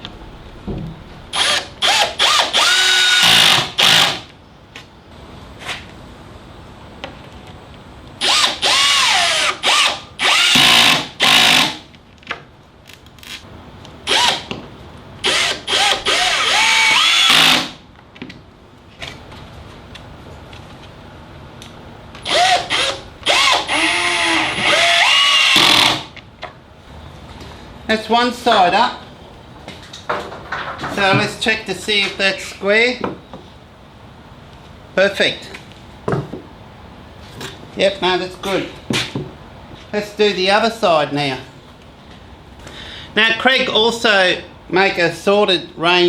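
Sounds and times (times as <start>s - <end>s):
cordless drill driving screws: 1.4s - 4.2s, 8.2s - 11.8s, 15.2s - 17.8s, 22.2s - 26.1s.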